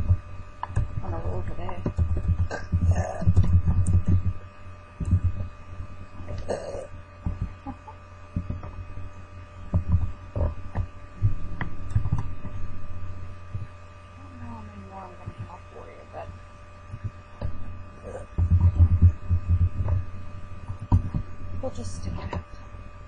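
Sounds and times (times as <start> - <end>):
woman burping: 2.5 - 3.3, 6.3 - 6.9.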